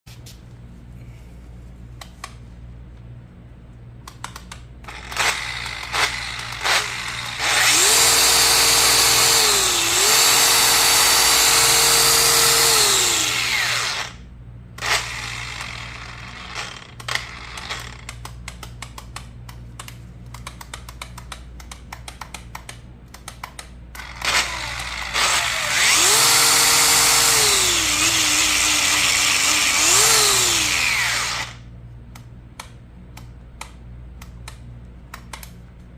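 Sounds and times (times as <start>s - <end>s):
grinder motor whining: 4.9s - 14.2s, 14.8s - 18.0s, 24.0s - 31.6s.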